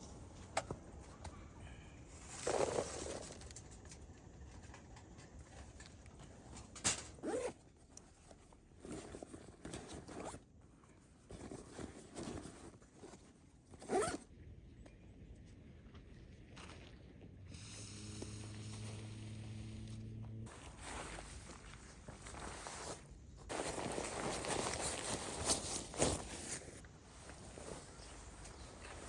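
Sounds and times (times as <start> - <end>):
zipper being pulled: 7.2 - 7.6, 11.3 - 14.2.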